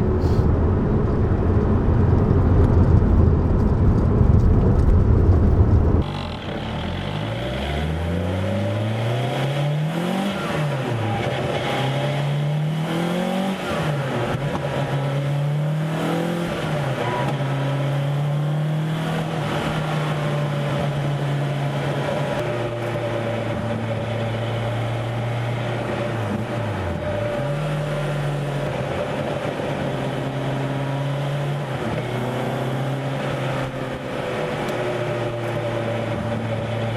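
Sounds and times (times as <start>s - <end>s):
sports car engine accelerating: 0.0s - 36.9s.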